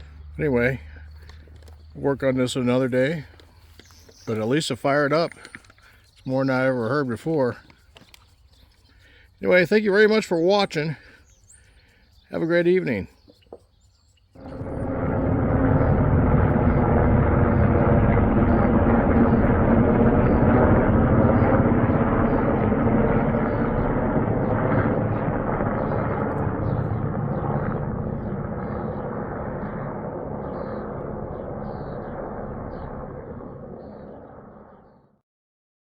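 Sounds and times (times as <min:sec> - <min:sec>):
engine running: 0:14.4 - 0:34.7.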